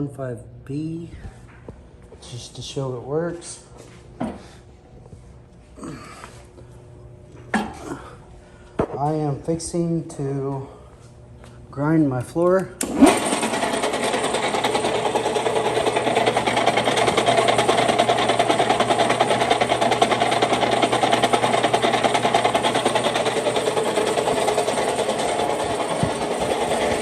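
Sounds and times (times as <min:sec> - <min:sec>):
floor grinder running: 0:12.8 - 0:27.0.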